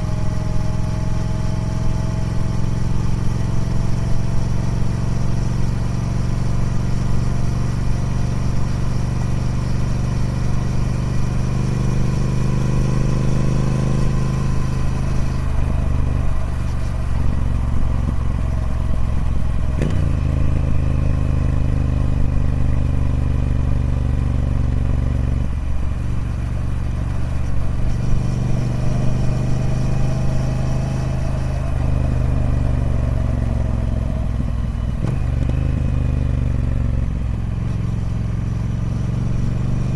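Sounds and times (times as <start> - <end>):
motorcycle engine running: 0.0 - 39.9.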